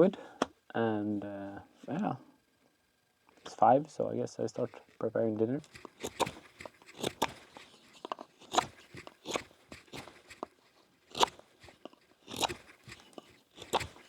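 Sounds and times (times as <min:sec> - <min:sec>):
dry wood crunching and cracking: 0:05.6 - 0:14.0.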